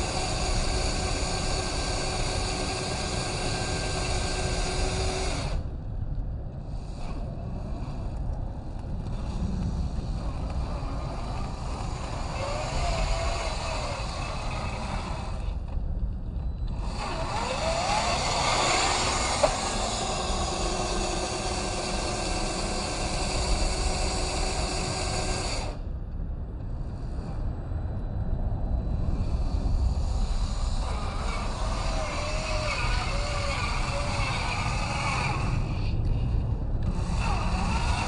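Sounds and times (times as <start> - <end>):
rc car drivetrain whining: 0.0 - 5.7, 9.0 - 15.8, 16.6 - 25.8, 29.7 - 38.0
steady low rumble: 0.0 - 38.0.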